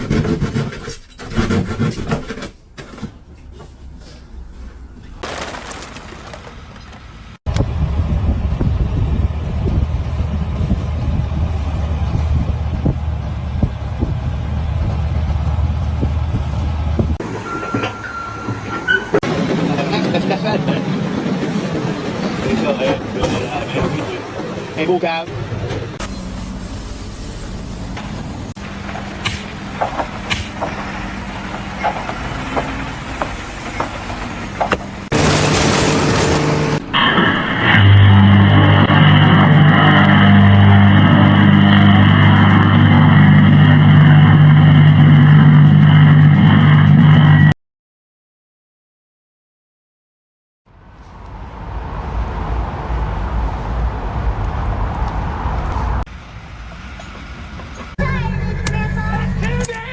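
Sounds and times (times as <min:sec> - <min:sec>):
heavy engine rumbling: 0:02.6 - 0:47.5, 0:50.7 - 0:59.9
hissing machine noise: 0:26.0 - 0:38.4
motor running steadily: 0:35.1 - 0:36.8.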